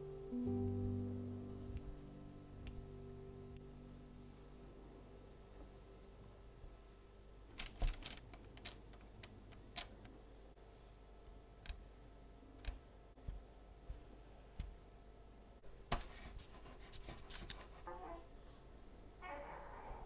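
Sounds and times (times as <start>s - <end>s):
scratchy crackly clicks and rasps: 7.6s - 10.2s
light clicks and taps: 11.6s - 12.0s, 12.6s - 15.0s.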